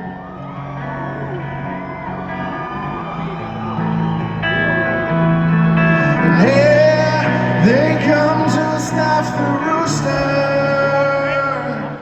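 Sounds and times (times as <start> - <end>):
guitars: 0.0 - 12.0
live rock band playing: 0.0 - 12.0
person singing: 5.9 - 12.0.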